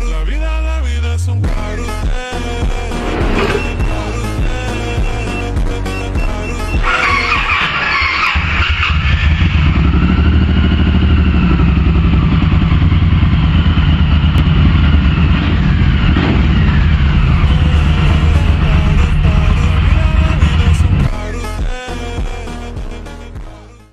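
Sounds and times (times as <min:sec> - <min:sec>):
music: 0:00.0 - 0:07.7, 0:17.4 - 0:23.9
motorcycle engine running: 0:02.6 - 0:21.1.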